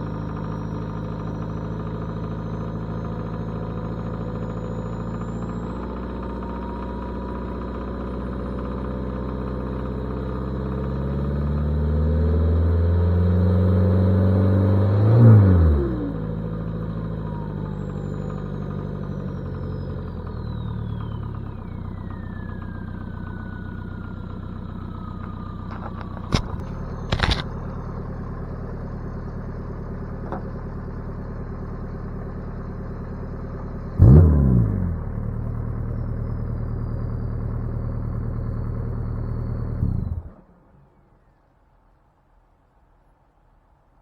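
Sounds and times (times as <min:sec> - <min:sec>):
diesel engine running: 0:00.0 - 0:11.6, 0:15.4 - 0:40.4
turbo whine: 0:15.6 - 0:40.4
sharp clicks: 0:25.8 - 0:27.6.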